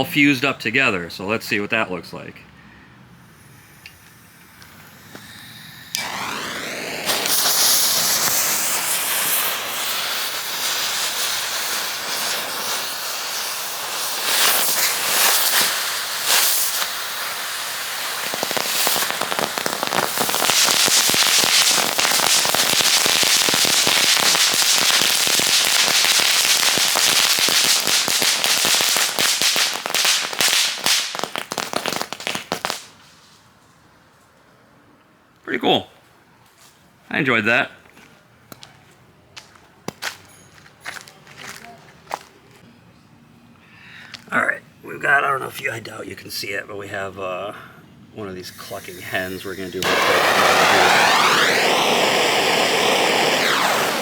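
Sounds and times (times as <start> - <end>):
fireworks crackling and popping: 3.3 - 33.6, 39.4 - 42.3, 48.4 - 54.0.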